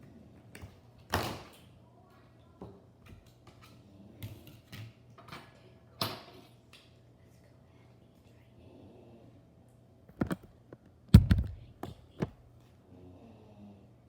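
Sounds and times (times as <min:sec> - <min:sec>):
low steady hum: 0:06.9 - 0:14.0.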